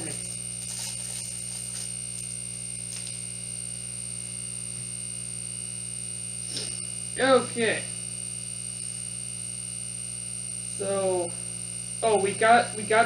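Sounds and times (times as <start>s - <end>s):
plastic wrapper crinkling: 0.0s - 3.2s
electrical mains hum: 0.0s - 13.0s
high-pitched whine: 0.0s - 13.0s.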